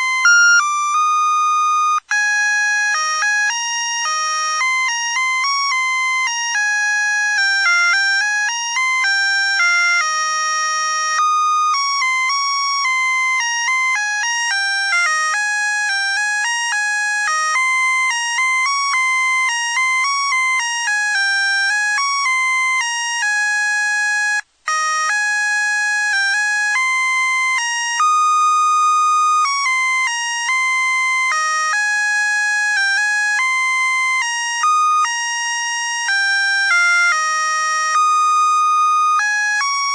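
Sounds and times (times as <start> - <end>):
tinny electronic beeping melody: 0.0 - 3.6.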